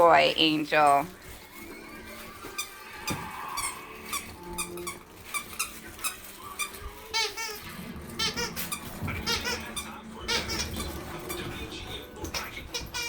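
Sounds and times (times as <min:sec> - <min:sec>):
squeaky dog toy squeaking: 0:03.6 - 0:11.3, 0:12.7 - 0:13.0.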